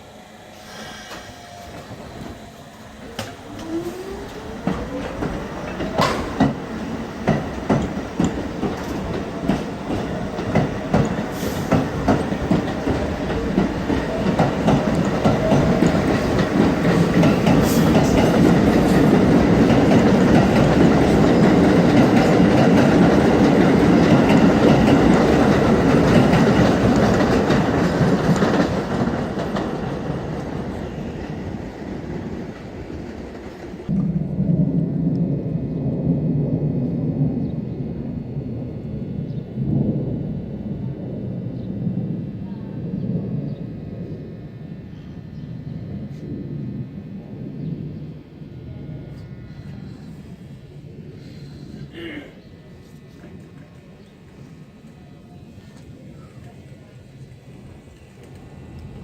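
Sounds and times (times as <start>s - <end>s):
subway motor whine: 0.0s - 59.0s
subway train rumble: 0.0s - 59.0s
wheels clicking over rail joints: 3.0s - 30.6s.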